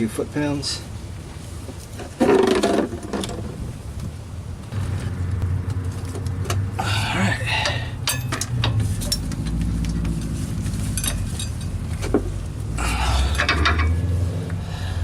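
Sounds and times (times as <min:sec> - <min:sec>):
steady low rumble: 0:03.6 - 0:15.0
hand tools clicking and clinking: 0:07.5 - 0:12.4, 0:13.2 - 0:14.1.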